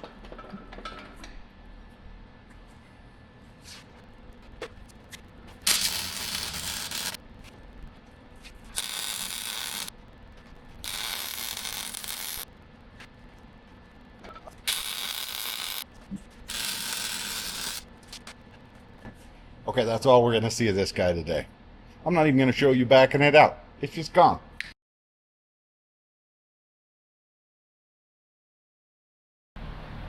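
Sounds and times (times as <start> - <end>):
welder crackling and hissing: 4.8 - 13.1, 14.4 - 18.8.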